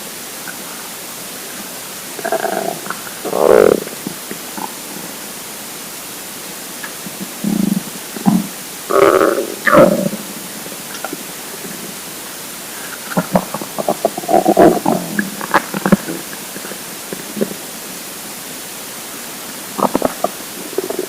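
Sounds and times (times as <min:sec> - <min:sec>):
steady hiss: 0:00.0 - 0:21.0
stomach rumbling and gurgling: 0:02.1 - 0:05.2, 0:06.8 - 0:12.0, 0:12.7 - 0:17.8, 0:19.7 - 0:21.0.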